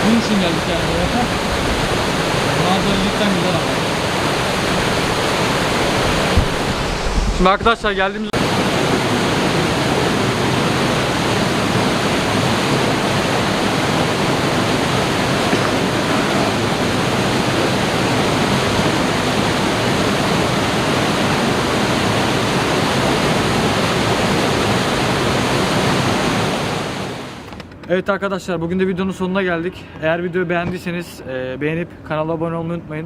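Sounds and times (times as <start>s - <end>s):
waterfall rushing: 0.0s - 27.4s.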